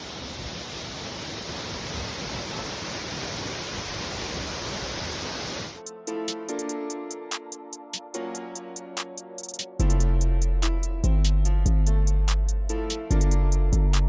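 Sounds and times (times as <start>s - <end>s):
waterfall rushing: 0.0s - 5.8s
music: 5.8s - 14.0s.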